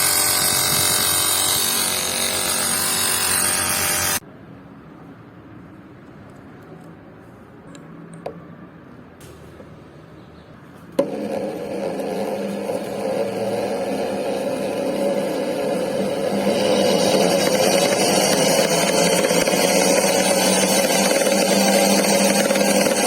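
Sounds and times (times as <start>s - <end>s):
electric power tool running: 0.0s - 4.2s, 11.0s - 23.0s.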